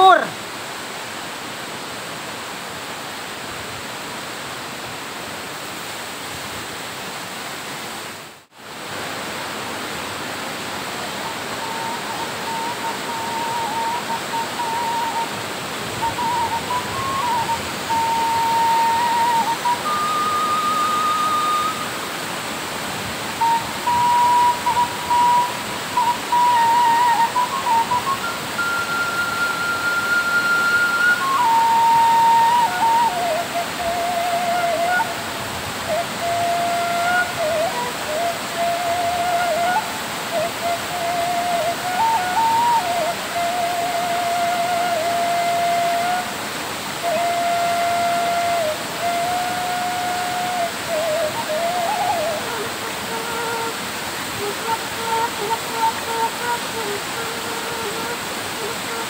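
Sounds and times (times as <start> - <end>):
waterfall rushing: 0.0 - 59.0
melody of high held notes: 23.4 - 33.2.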